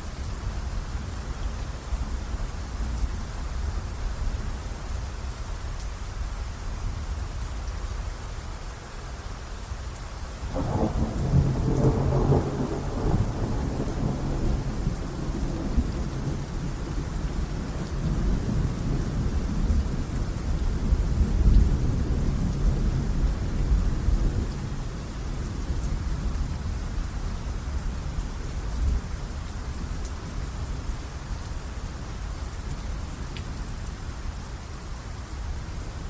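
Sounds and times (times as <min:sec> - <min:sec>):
steady rain: 0:00.0 - 0:36.0
thunder crack and rumble: 0:10.5 - 0:16.9.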